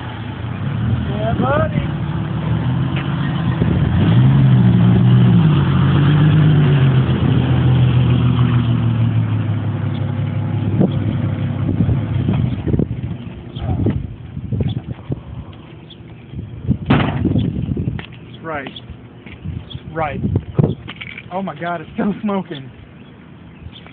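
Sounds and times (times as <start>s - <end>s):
car engine revving: 0.0s - 14.1s.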